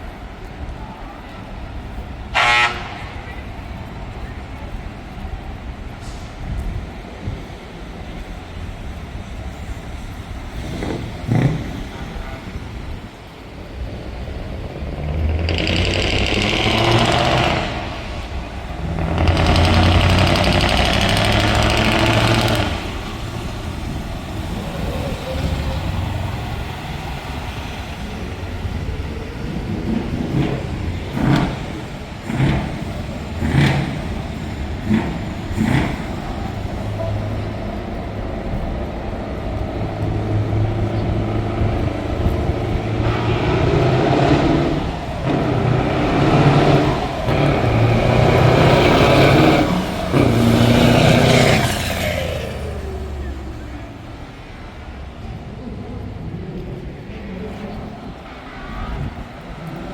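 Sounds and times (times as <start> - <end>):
truck engine revving: 10.0 - 59.9.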